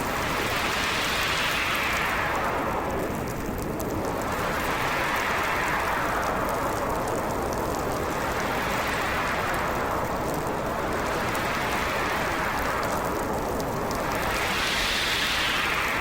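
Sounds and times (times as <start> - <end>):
storm wind howling: 0.0 - 16.0.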